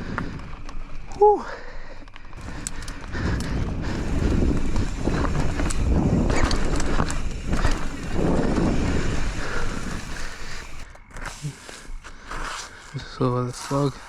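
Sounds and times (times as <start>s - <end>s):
bike clicks and knocks: 0.0s - 1.2s, 1.9s - 12.7s
bike tyres rumbling: 0.0s - 14.0s
wind on microphone: 2.4s - 10.8s.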